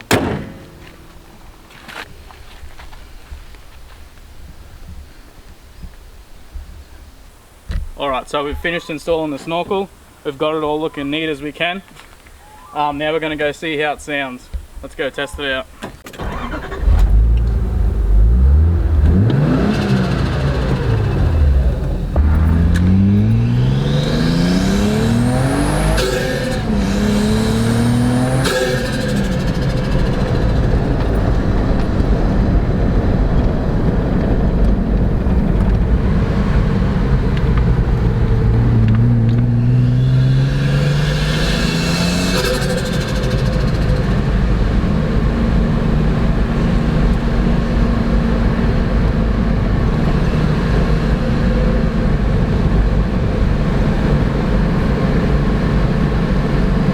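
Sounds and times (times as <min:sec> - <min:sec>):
car engine accelerating: 0:16.1 - 0:56.9
high turbo whistle: 0:19.1 - 0:31.2.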